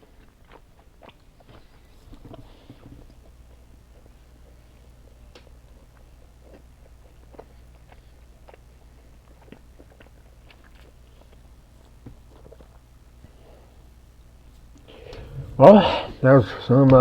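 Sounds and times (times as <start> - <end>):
person chewing candy: 0.0 - 12.9
low hum: 14.8 - 17.0.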